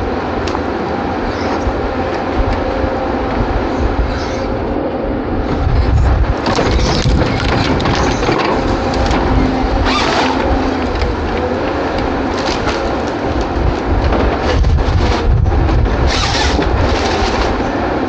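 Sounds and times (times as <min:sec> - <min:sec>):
harvester engine and hydraulics: 0:00.0 - 0:18.0
wood cracking and crunching: 0:06.2 - 0:17.9.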